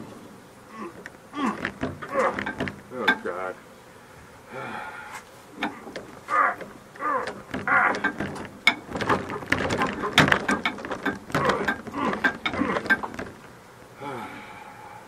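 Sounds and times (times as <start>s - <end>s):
person grunting: 0.7s - 3.1s, 4.5s - 5.0s, 11.4s - 12.9s, 14.0s - 14.6s
metal clattering: 5.6s - 13.5s.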